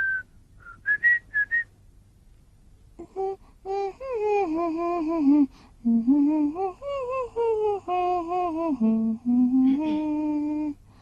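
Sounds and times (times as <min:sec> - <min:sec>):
person humming a tune: 0:03.0 - 0:10.8.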